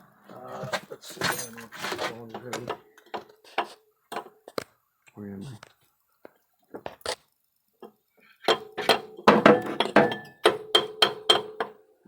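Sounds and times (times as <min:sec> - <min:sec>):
hammer striking metal: 0:08.5 - 0:11.7.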